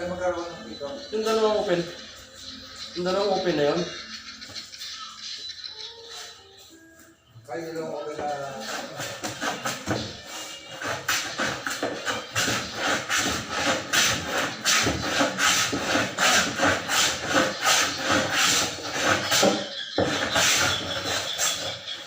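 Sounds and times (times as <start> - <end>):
hand tool scraping wood: 8.2 - 22.0.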